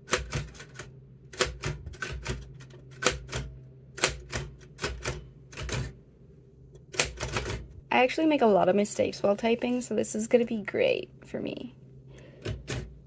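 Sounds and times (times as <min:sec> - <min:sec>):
manual typewriter keys clacking: 0:00.0 - 0:06.0, 0:06.8 - 0:07.7.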